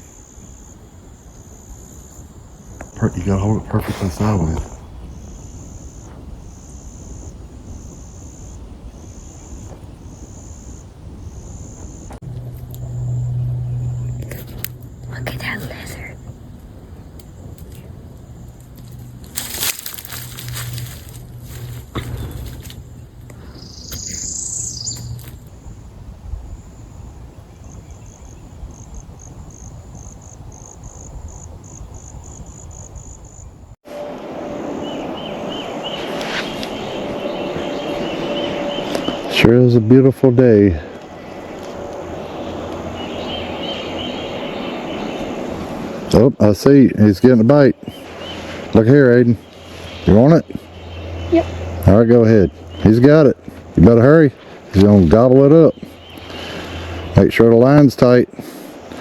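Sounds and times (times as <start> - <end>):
low outdoor rumble: 0.0 - 32.8, 33.4 - 59.0
insect buzzing call: 0.0 - 46.2, 47.5 - 54.8, 55.7 - 57.2
lower chirps: 0.0 - 59.0
loud low hum: 0.8 - 27.8, 33.8 - 59.0
high call: 33.8 - 59.0.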